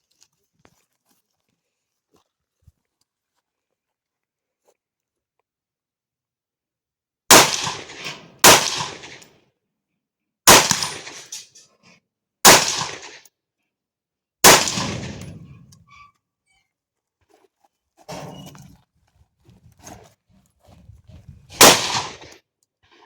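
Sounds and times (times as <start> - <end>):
rifle shots with echo: 7.3 - 9.2, 10.5 - 11.4, 12.4 - 13.2, 14.4 - 15.6, 21.5 - 22.4.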